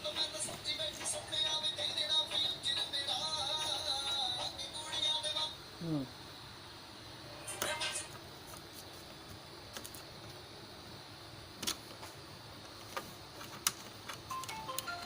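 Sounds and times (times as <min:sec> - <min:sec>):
steady low hiss: 0:00.0 - 0:15.0.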